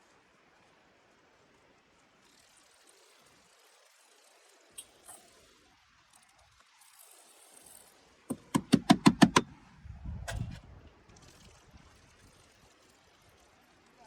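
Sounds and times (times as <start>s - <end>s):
sharp knocks: 8.3s - 9.5s.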